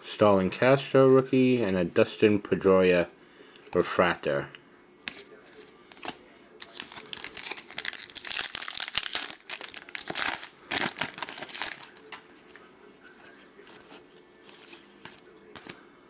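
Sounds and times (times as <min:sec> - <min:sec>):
wrapper being torn and crinkled: 0:05.9 - 0:12.1.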